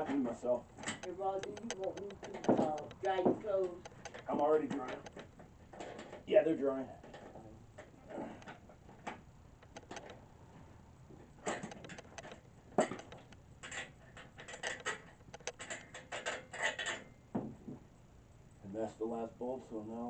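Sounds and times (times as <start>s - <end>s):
metallic clinks and knocks: 0.0s - 6.3s, 6.9s - 10.2s, 11.2s - 17.6s.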